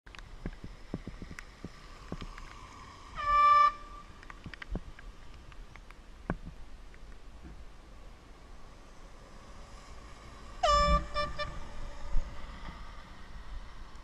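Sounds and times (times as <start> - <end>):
handheld air horn blast: 10.6 - 11.8.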